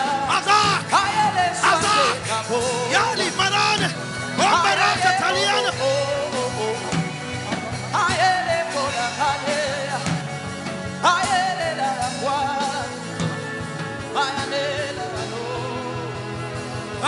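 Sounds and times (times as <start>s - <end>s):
worship music accompaniment: 0.0s - 17.0s
person singing held phrases: 1.5s - 6.0s.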